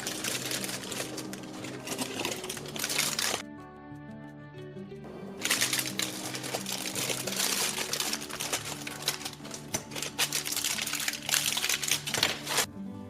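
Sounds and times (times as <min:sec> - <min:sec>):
packaging crinkling: 0:00.0 - 0:03.4, 0:05.4 - 0:12.7
soft background music: 0:00.0 - 0:13.0
small plastic pieces clicking: 0:05.5 - 0:12.7.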